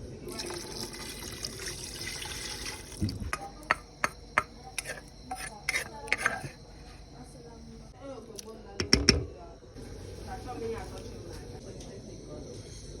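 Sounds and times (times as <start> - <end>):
water running: 0.3 - 4.1
utensils knocking against pot: 3.3 - 6.6.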